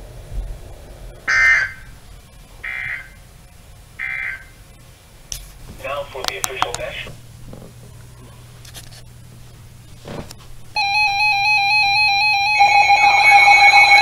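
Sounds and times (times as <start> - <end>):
pulsing electronic alarm beeps: 10.8 - 14.0
warbling electronic sweep: 10.9 - 14.0.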